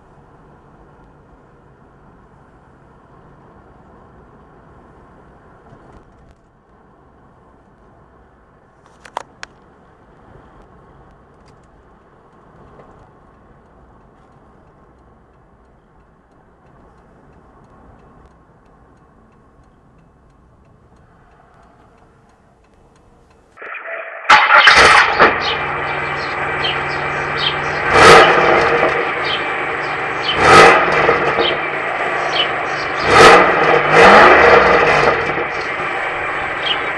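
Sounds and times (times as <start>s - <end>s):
click: 10.6s - 23.5s
car engine starting and revving: 23.6s - 36.9s.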